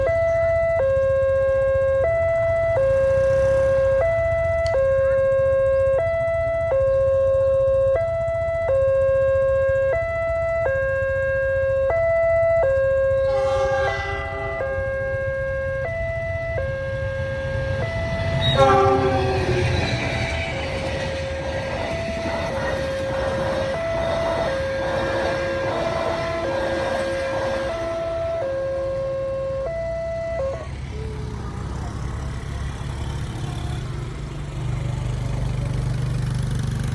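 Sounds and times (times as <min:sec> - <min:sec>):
level-crossing two-tone alarm: 0:00.0 - 0:31.4
train rumbling: 0:01.5 - 0:06.6, 0:12.7 - 0:29.7
train horn: 0:13.0 - 0:29.7.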